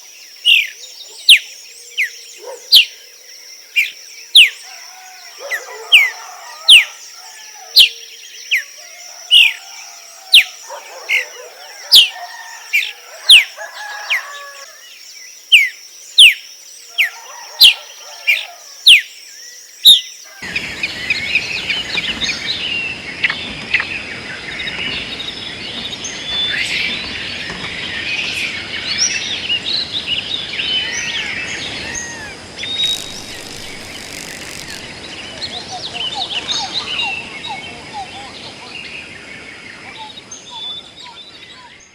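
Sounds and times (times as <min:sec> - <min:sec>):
many birds chirping: 0:00.0 - 0:41.9
bird sharp rising call: 0:20.3 - 0:37.7
steady hiss: 0:20.4 - 0:36.6.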